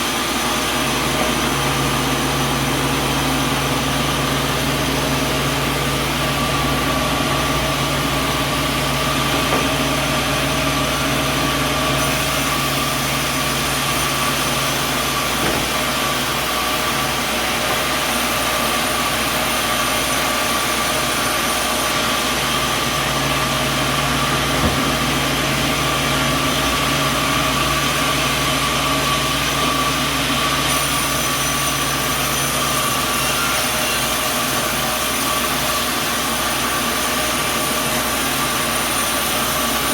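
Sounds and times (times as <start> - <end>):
sawmill machinery drone: 0.0 - 39.9.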